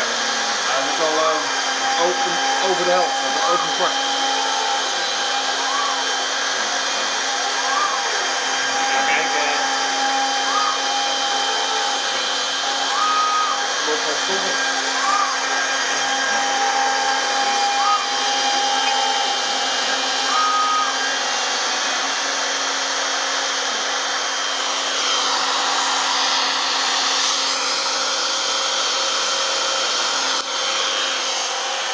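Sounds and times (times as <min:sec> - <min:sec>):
router spindle whining while cutting: 0:00.0 - 0:31.9
rising and falling tones: 0:01.4 - 0:21.4.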